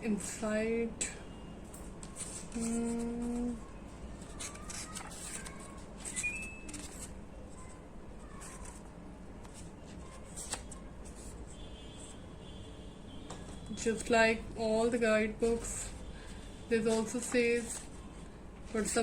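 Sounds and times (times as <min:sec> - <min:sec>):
paper rustling: 0:02.0 - 0:11.4, 0:16.8 - 0:18.1
soft clicks of pages handled: 0:04.2 - 0:11.3.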